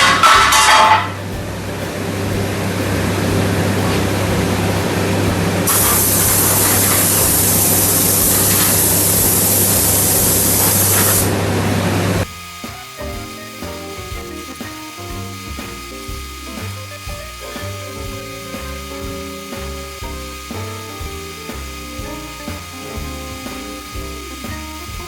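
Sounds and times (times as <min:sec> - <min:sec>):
spray gun hissing: 0:00.0 - 0:25.0
low hum: 0:00.1 - 0:12.3.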